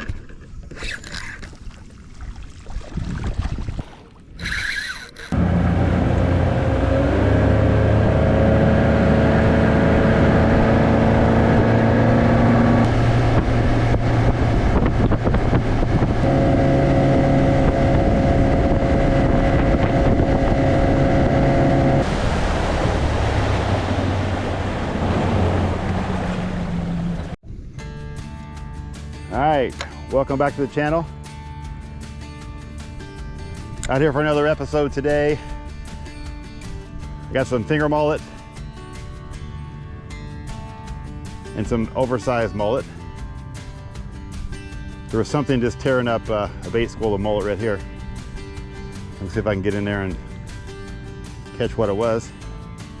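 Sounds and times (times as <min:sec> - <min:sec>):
water noise: 0:00.0 - 0:27.4
wind: 0:00.0 - 0:53.0
outboard motor running: 0:04.3 - 0:27.4.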